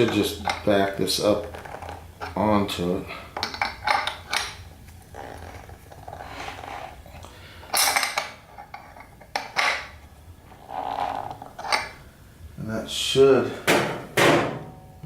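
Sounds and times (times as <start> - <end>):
wrench scraping and clinking on metal: 7.7 - 12.0.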